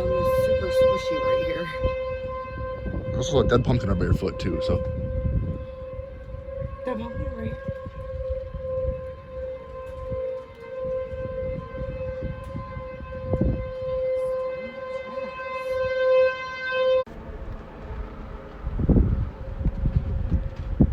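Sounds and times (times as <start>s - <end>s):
tornado warning siren wailing: 0.0s - 20.9s
wind rumbling on microphone: 0.0s - 20.9s.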